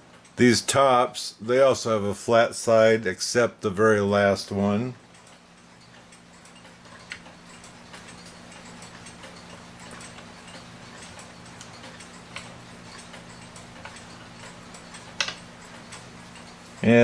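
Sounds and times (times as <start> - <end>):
mechanical clock ticking: 0.0 - 1.7, 3.9 - 17.0
steady low hum: 0.0 - 17.0
small parts clicking and tapping: 5.1 - 16.9.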